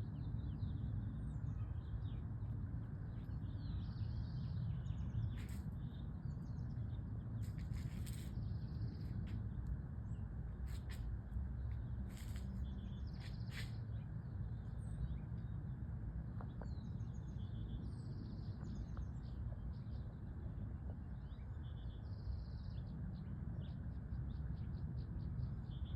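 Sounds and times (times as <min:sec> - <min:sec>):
small birds chirping and trilling: 0:00.0 - 0:11.0, 0:11.6 - 0:25.9
low outdoor rumble: 0:00.0 - 0:25.9.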